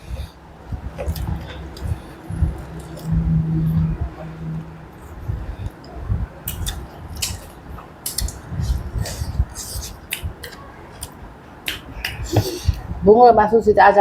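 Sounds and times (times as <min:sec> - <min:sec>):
soft low thumps: 0:00.0 - 0:09.6
chewing and smacking: 0:00.2 - 0:03.2, 0:05.0 - 0:12.8.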